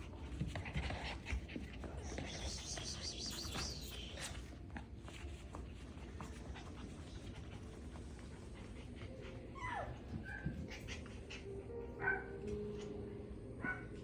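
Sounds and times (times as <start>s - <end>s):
puppies tapping and scuffing: 0.0s - 12.9s
puppy whimper: 9.2s - 12.2s.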